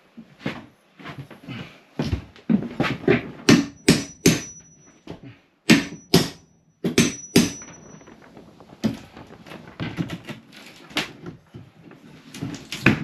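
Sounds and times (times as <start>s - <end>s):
hammer striking wood: 3.5s - 4.8s, 5.7s - 7.8s.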